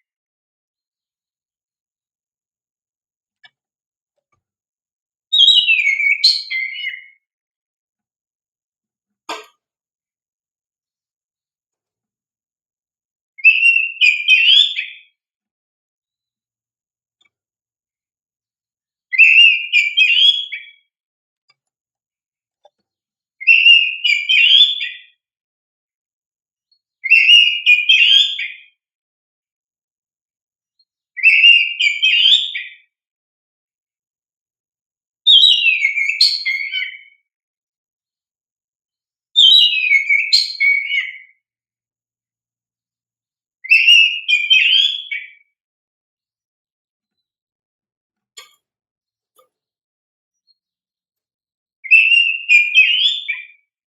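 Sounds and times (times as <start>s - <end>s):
bird singing whistled phrases: 5.3s - 7.2s, 13.4s - 15.1s, 19.1s - 20.9s, 23.4s - 25.2s, 27.0s - 28.8s, 31.2s - 32.8s, 35.3s - 37.2s, 39.4s - 41.4s, 43.6s - 45.5s, 51.8s - 53.7s.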